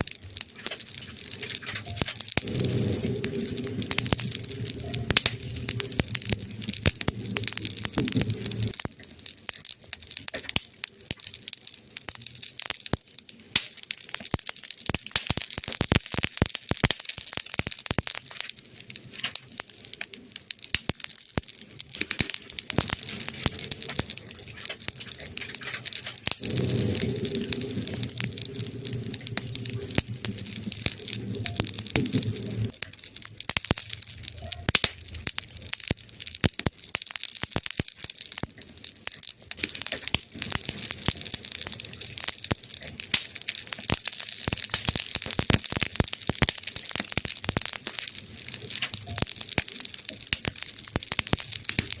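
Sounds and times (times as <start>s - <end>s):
campfire crackling and popping: 0.0s - 52.0s
low hum: 2.3s - 8.8s, 22.8s - 32.8s.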